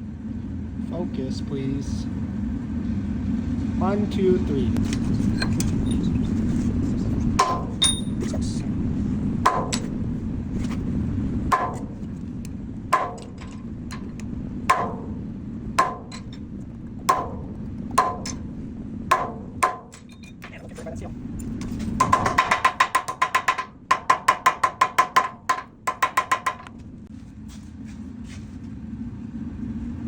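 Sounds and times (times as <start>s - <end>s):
low rumble: 1.9s - 27.2s
hammer striking steel on anvil: 7.4s - 8.2s, 9.5s - 10.0s, 11.5s - 12.1s, 13.0s - 15.2s, 15.8s - 16.4s, 17.1s - 18.5s, 19.1s - 20.4s, 22.0s - 26.7s.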